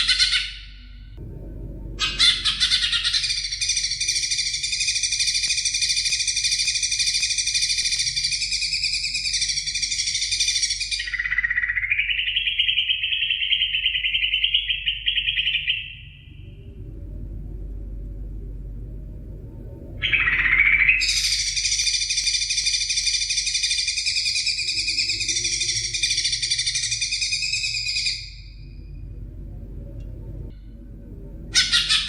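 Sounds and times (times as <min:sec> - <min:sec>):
bird singing rapid trill: 0:02.0 - 0:16.4, 0:20.0 - 0:28.8, 0:31.6 - 0:32.0.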